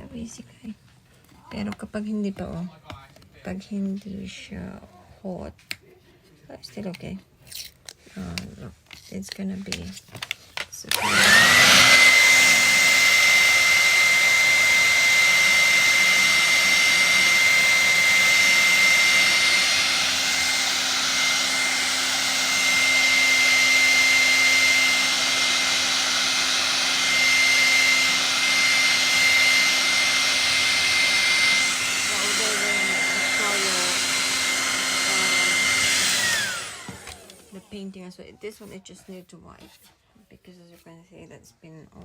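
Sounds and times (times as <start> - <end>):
hair dryer running: 10.2 - 38.6.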